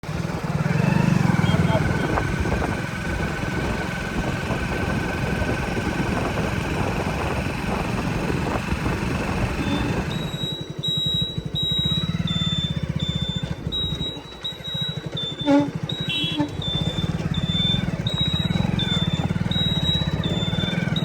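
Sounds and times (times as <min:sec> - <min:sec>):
heavy diesel engine running: 0:00.0 - 0:21.0
short high beeps: 0:09.5 - 0:21.0.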